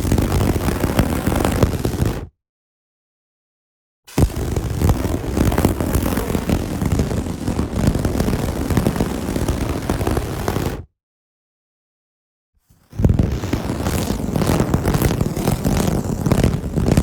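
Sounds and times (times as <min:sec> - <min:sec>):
large fire roaring and crackling: 0:13.1 - 0:17.0.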